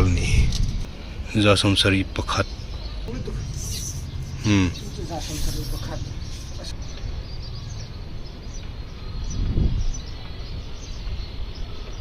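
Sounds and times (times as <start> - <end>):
low rumble: 2.6 - 7.5.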